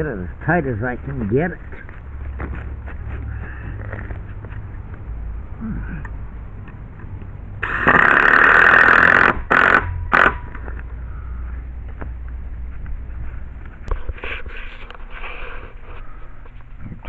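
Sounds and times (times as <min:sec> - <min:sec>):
cordless drill driving a screw: 0:07.6 - 0:10.4.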